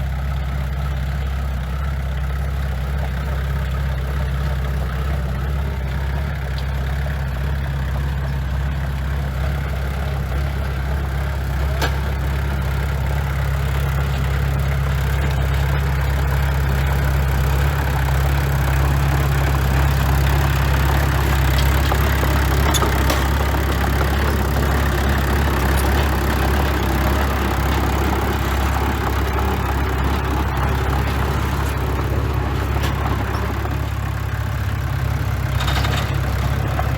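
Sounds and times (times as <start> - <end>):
diesel engine running: 0.0 - 36.9.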